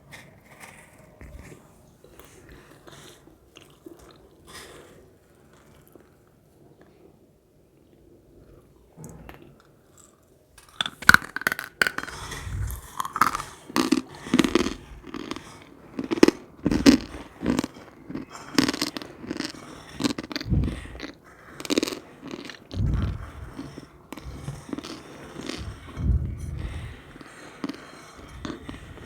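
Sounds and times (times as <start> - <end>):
brittle film crunching when chewed: 10.0 - 29.0.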